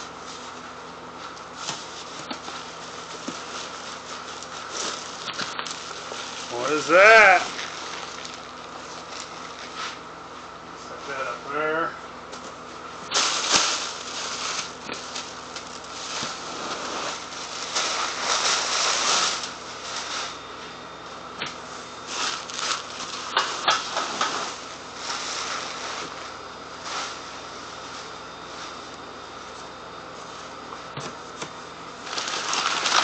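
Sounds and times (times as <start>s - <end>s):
packing material rustling: 1.6s - 9.8s, 13.1s - 20.1s, 22.1s - 24.3s, 32.0s - 33.0s.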